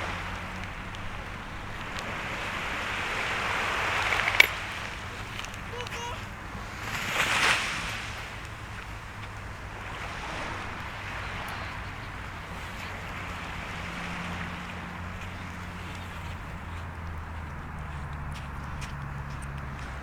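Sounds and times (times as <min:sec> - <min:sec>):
surf washing on shore: 0:00.0 - 0:20.0
wind: 0:00.0 - 0:20.0.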